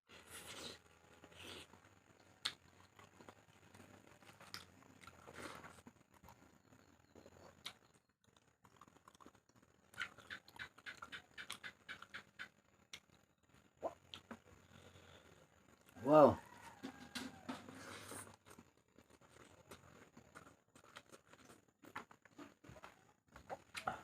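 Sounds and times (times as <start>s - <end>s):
person chewing and eating: 0.1s - 24.0s.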